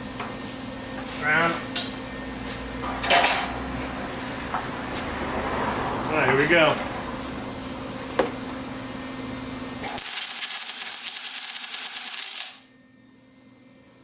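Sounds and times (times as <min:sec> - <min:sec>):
steady low hum: 0:00.0 - 0:11.1
welding arc crackling hiss: 0:09.8 - 0:12.6.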